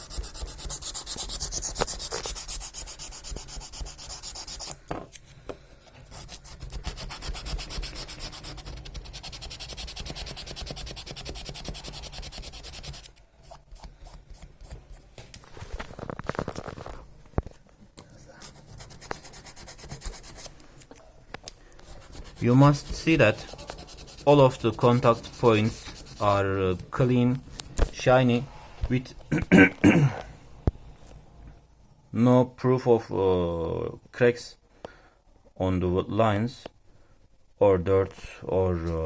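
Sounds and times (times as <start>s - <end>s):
sandpaper scrubbing metal pins: 22.0s - 26.4s.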